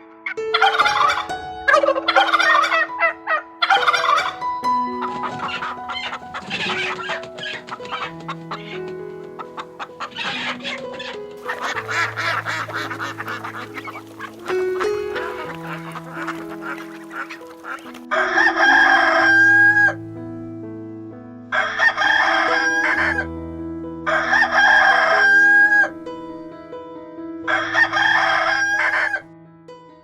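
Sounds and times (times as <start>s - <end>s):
background music: 0.0s - 30.0s
rooster crowing: 11.4s - 20.0s, 24.1s - 25.9s, 27.5s - 29.2s.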